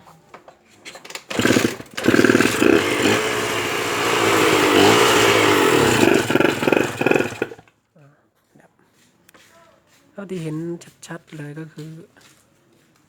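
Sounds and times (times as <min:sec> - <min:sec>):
two-stroke engine revving: 0:01.1 - 0:07.6.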